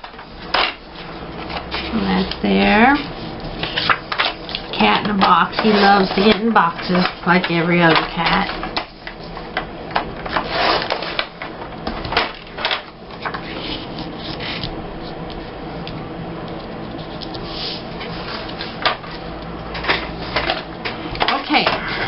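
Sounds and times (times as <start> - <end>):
paper rustling: 0.2 - 9.4, 12.1 - 15.6.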